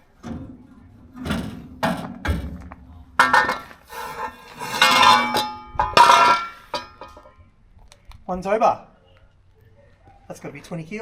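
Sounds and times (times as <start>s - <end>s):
metal car parts clanking: 0.0s - 7.4s.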